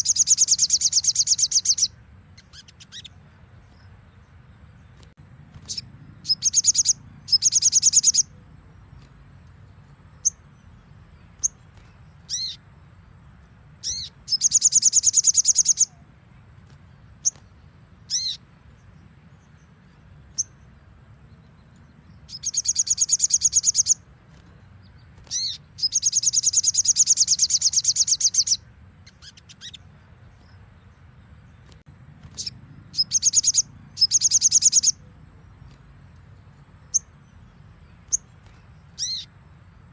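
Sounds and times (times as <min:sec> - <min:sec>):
bird rapid high trills: 0:00.0 - 0:03.2, 0:05.5 - 0:08.4, 0:10.1 - 0:12.7, 0:13.8 - 0:16.1, 0:16.7 - 0:18.5, 0:22.2 - 0:30.6, 0:32.2 - 0:37.2, 0:37.9 - 0:39.4.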